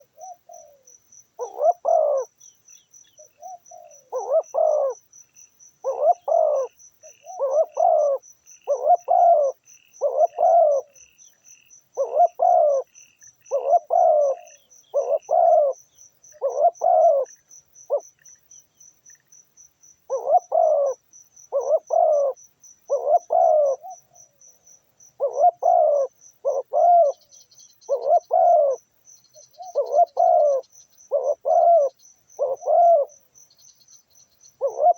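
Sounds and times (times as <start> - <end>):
doves cooing: 0.0 - 2.3, 3.2 - 5.0, 5.8 - 11.0, 12.0 - 17.3, 20.1 - 24.4, 25.2 - 28.8, 29.5 - 33.2, 34.6 - 34.9
faint small bird chirps: 0.0 - 19.4, 20.1 - 34.9
high insect trill: 0.0 - 34.9.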